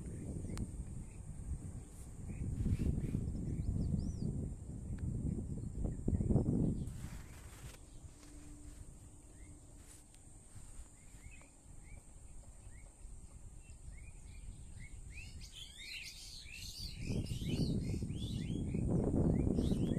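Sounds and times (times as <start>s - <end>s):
small birds chirping: 0.0s - 8.5s, 9.2s - 19.9s
steady high hiss: 6.0s - 17.6s.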